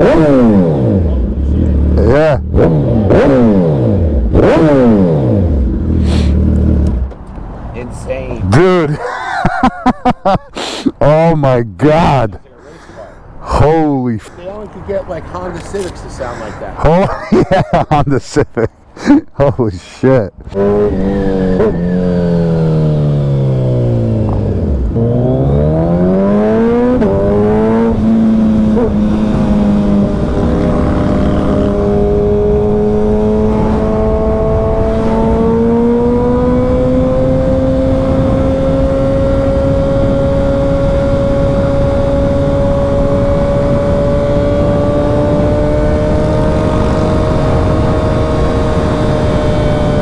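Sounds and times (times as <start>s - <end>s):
motorcycle engine revving: 0.0s - 7.2s, 20.5s - 50.0s
gear change: 0.0s - 9.8s, 20.4s - 50.0s.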